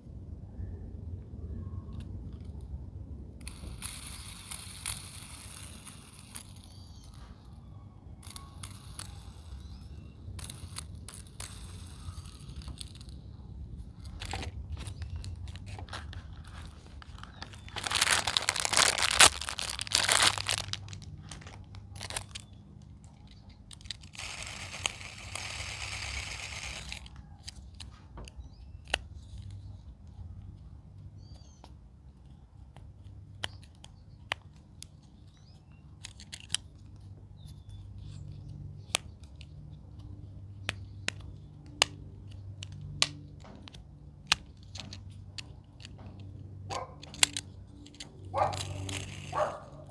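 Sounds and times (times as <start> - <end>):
plastic packaging crinkling: 14.0 - 27.9, 47.0 - 49.9.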